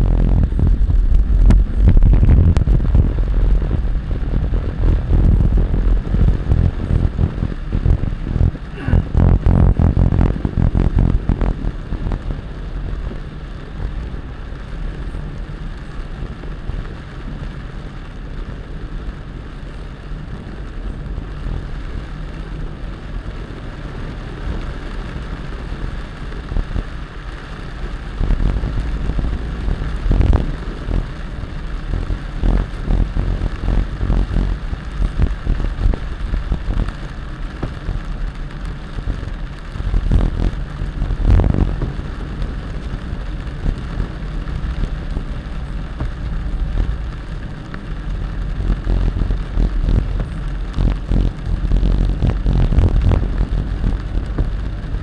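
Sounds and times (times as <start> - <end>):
short low thumps: 0.0 - 12.3, 28.0 - 37.0
heavy rain falling: 0.0 - 55.0
steady low rumble: 0.0 - 55.0.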